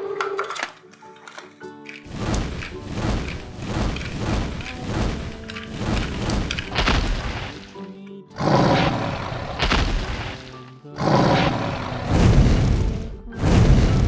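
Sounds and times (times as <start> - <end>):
cartoon background music: 0.0 - 14.0
heavy booms: 12.1 - 14.0.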